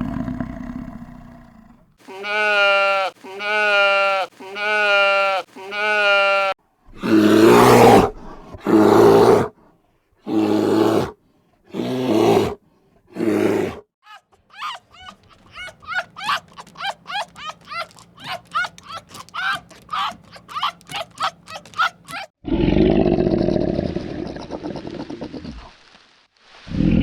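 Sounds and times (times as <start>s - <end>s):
loud animal calls: 2.0s - 7.7s, 14.5s - 22.3s.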